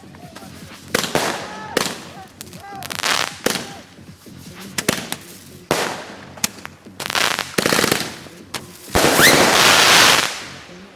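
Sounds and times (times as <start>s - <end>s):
firework bangs and crackling: 0.0s - 10.9s
rising firework whistle: 9.0s - 10.6s.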